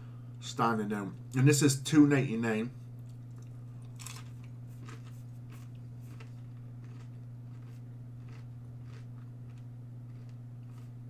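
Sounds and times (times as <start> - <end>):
low electrical hum: 0.0 - 11.0
person chewing crunchy food: 3.0 - 11.0.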